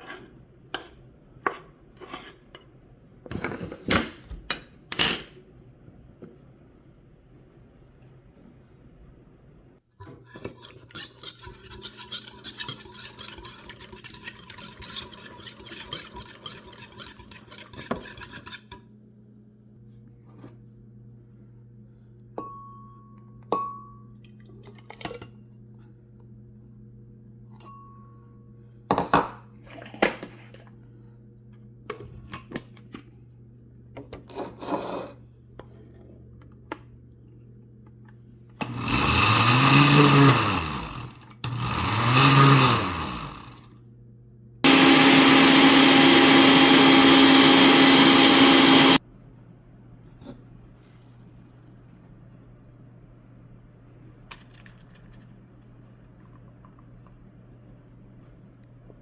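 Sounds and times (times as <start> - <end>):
metal utensil scraping a dish: 10.0 - 18.8.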